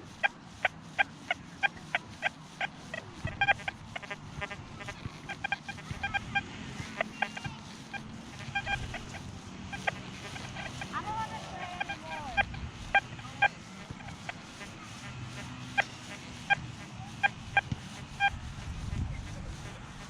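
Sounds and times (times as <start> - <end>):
metal detector beeps: 1.0 - 16.6.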